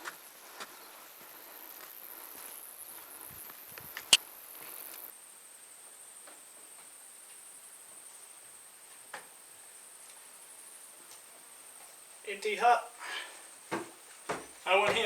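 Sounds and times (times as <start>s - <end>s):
faint ticks and steps: 0.0s - 5.1s, 6.2s - 9.4s, 10.0s - 12.2s
high-pitched insect chorus: 0.0s - 6.4s.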